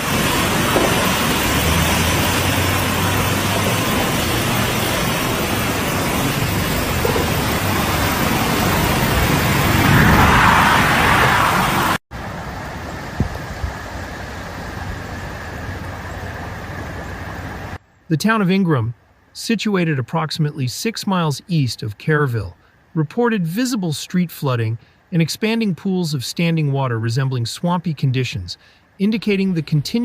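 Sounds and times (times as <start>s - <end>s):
loud steady rushing noise: 0.0s - 17.8s.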